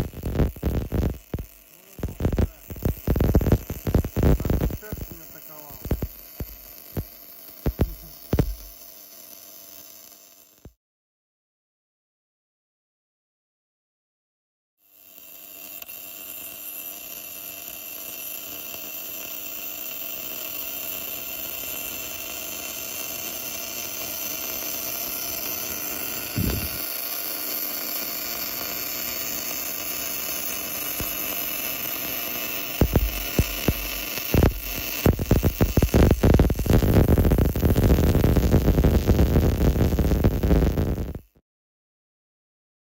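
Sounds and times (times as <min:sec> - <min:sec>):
machine running with whine: 0:00.0 - 0:08.8, 0:25.3 - 0:27.1, 0:30.2 - 0:41.2.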